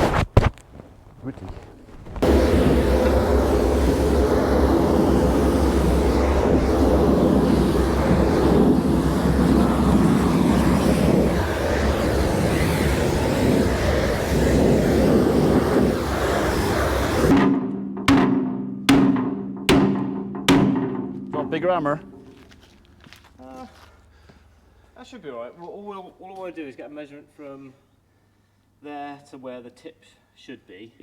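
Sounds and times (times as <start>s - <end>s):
motor hum: 2.2s - 17.3s
pressure washer spraying: 2.2s - 17.3s.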